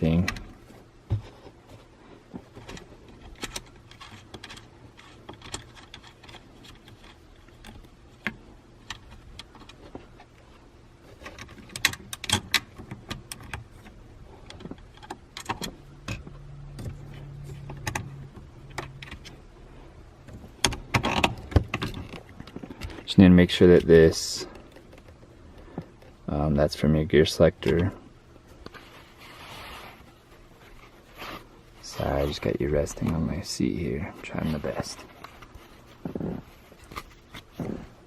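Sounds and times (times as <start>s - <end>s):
low steady hum: 0.0s - 38.0s
small metal parts clicking and rattling: 2.5s - 10.3s.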